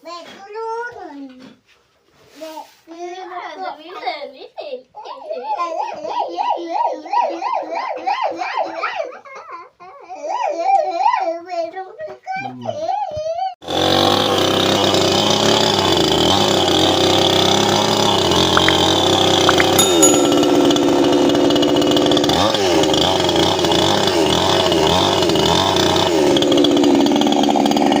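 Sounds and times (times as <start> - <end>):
chainsaw engine running: 13.7 - 19.2, 20.7 - 28.0.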